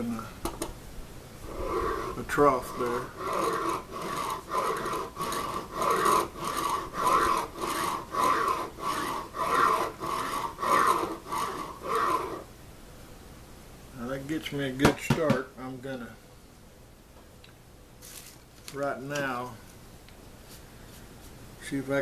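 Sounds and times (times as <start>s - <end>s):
file scraping on antler: 1.4s - 12.5s.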